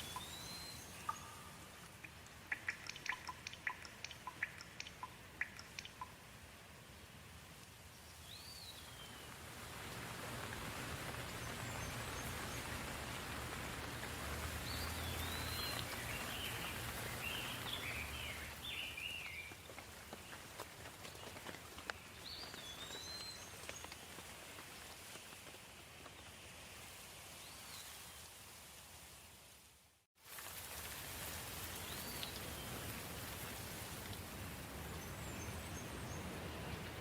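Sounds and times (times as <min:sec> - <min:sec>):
bird whistling and twittering: 0:00.0 - 0:01.4
soft rain falling: 0:00.0 - 0:37.0.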